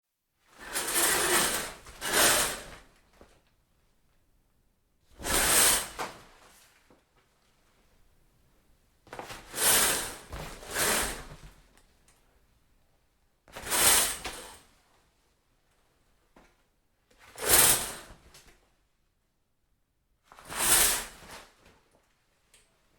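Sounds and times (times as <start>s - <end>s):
shower curtain swishing along rod: 0.6s - 2.9s, 9.4s - 11.4s, 20.4s - 21.6s.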